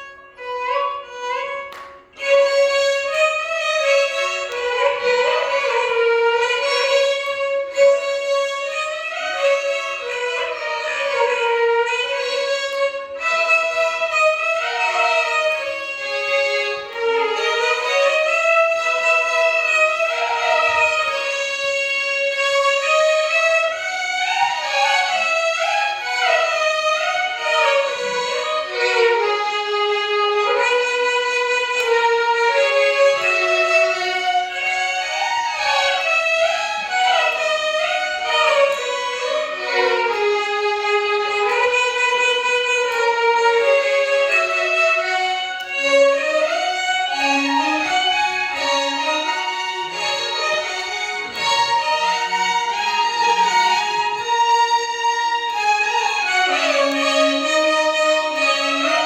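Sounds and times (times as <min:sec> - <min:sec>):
violin ensemble melody: 0:00.0 - 0:59.0.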